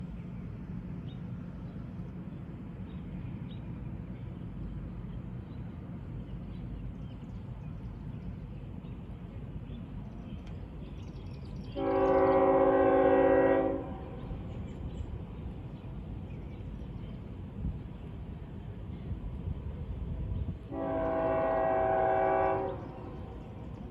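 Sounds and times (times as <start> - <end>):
train horn chord: 11.7 - 14.4, 20.7 - 23.3.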